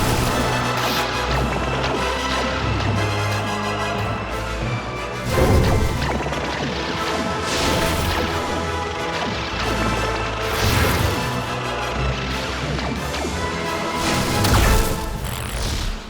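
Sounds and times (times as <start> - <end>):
crashing and smashing effects: 0.0 - 1.7, 7.2 - 9.8, 13.9 - 16.0
action film score: 0.0 - 16.0.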